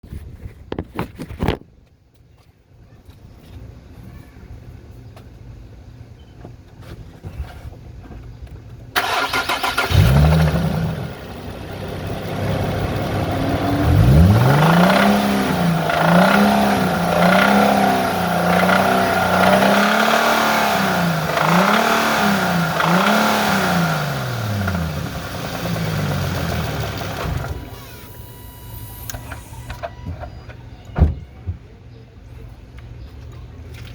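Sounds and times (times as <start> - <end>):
car engine idling and revving: 9.0 - 29.6.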